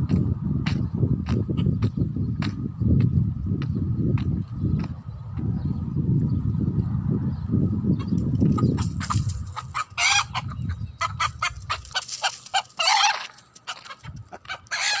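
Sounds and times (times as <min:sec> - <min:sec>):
hens clucking: 0:08.0 - 0:15.0.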